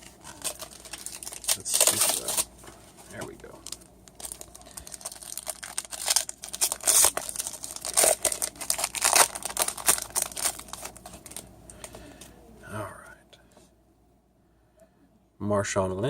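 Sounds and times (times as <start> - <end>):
wrapper crinkling and tearing: 0.0 - 11.5.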